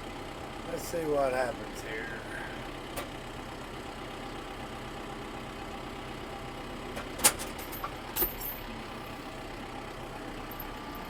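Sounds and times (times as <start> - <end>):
engine running under load: 0.0 - 11.0.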